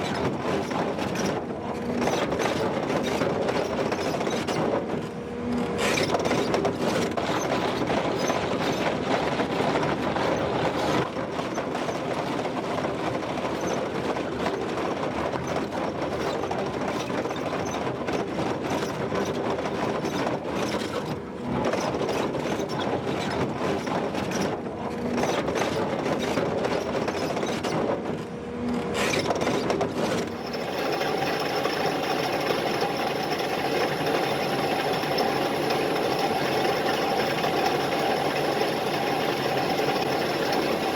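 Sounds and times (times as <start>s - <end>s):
excavator engine: 0.0s - 11.0s, 24.3s - 40.9s
chain cutter grinding rock: 0.1s - 9.0s, 28.6s - 40.9s.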